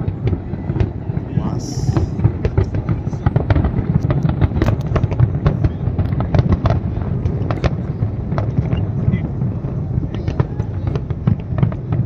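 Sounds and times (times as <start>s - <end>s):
fireworks bangs and crackles: 0.0s - 12.0s
low rumble: 1.4s - 5.1s.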